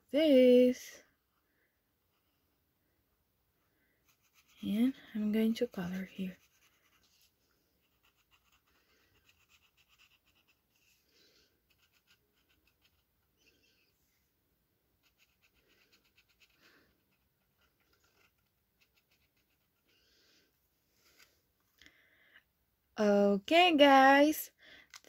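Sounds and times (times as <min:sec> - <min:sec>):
marker scratching on paper: 0:04.0 - 0:11.0, 0:11.6 - 0:13.1, 0:15.0 - 0:20.0.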